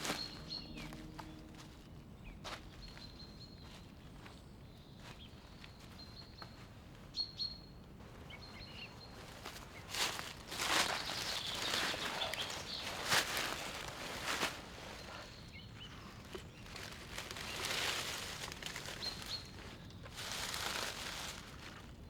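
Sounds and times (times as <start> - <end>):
footsteps crunching on forest floor: 0.0 - 6.7.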